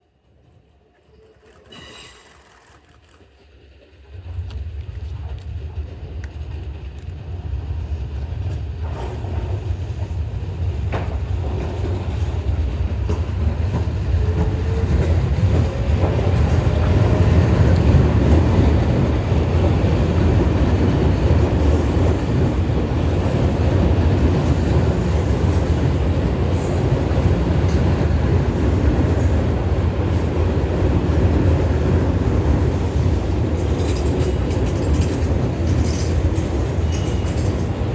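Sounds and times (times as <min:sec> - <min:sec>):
electric train running on rails: 0:00.0 - 0:37.9.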